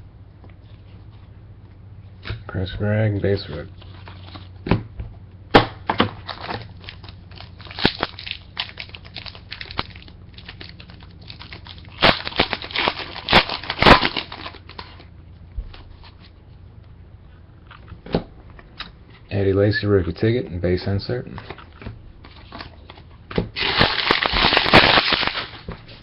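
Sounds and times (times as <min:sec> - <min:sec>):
foil wrapper crinkling: 0:06.2 - 0:15.1, 0:21.5 - 0:26.0
trading cards rustling: 0:06.2 - 0:15.1.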